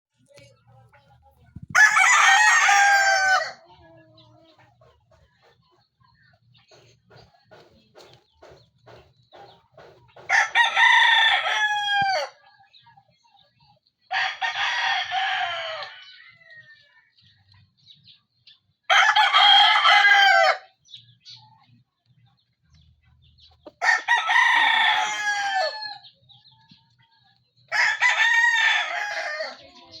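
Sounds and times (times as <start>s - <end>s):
faint hen clucking: 0.2s - 18.2s, 18.9s - 30.0s
rooster crowing: 1.7s - 3.6s, 10.3s - 12.4s, 14.1s - 16.8s, 18.9s - 20.7s, 23.8s - 26.0s, 27.7s - 29.6s.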